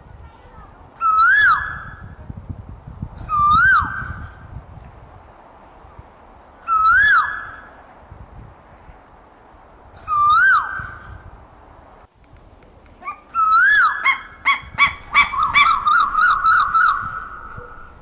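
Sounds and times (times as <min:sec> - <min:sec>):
bird whistled calls: 0:01.0 - 0:02.1, 0:03.2 - 0:04.2, 0:06.6 - 0:07.8, 0:10.0 - 0:11.1, 0:13.0 - 0:18.0.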